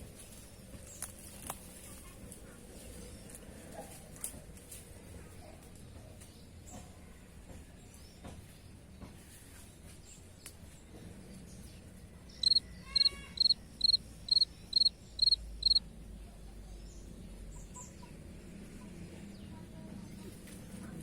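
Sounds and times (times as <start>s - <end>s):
faint outdoor background: 0.0s - 21.0s
cricket chirping: 12.4s - 15.8s.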